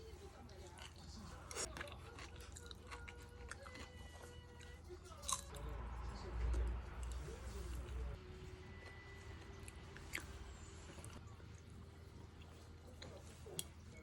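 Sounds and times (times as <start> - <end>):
person chewing food: 0.4 - 5.7, 8.7 - 14.0.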